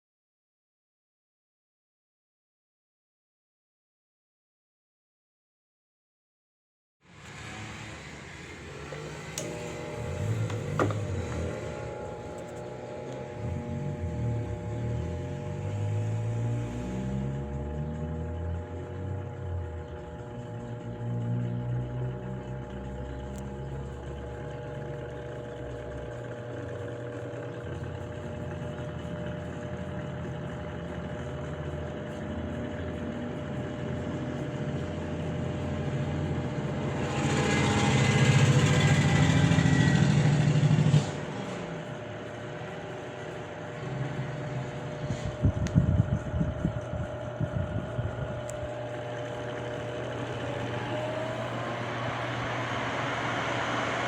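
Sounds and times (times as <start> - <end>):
table fan running: 7.1 - 54.0
wind buffeting microphone: 45.0 - 48.5.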